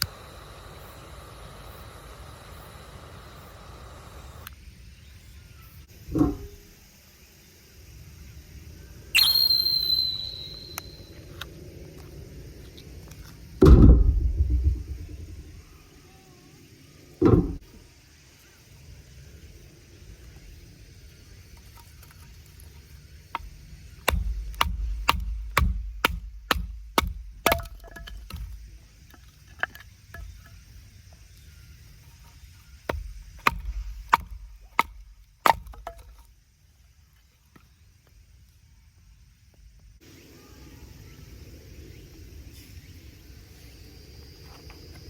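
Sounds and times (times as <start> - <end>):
heavy thump: 13.6 - 15.4, 17.2 - 17.6
wood being chopped: 23.3 - 28.7, 32.9 - 36.3.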